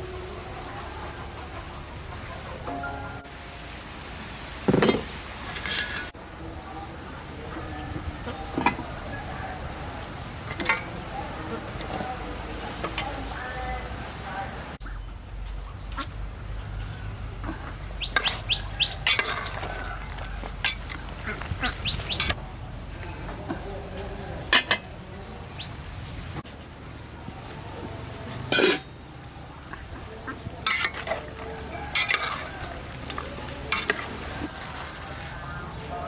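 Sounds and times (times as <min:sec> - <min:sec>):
utensils clinking against pots: 0:04.6 - 0:06.2, 0:10.4 - 0:11.1, 0:17.5 - 0:22.4, 0:24.4 - 0:24.9, 0:28.5 - 0:29.0, 0:30.6 - 0:34.5.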